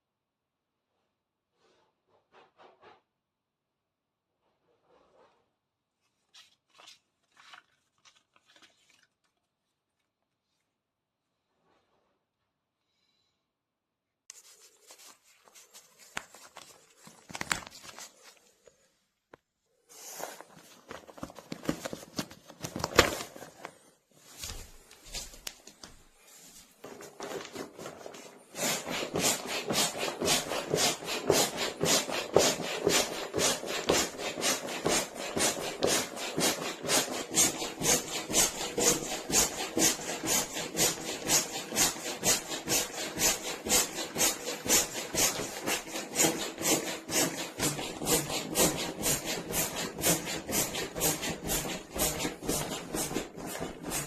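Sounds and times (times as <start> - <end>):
rustling and handling noises: 4.7 - 10.9, 14.3 - 30.2.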